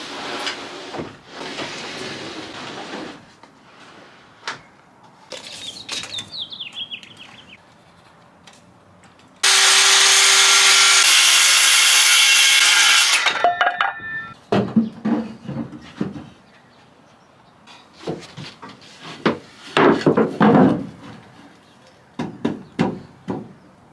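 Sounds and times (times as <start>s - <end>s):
power tool cutting wood: 9.4s - 13.5s.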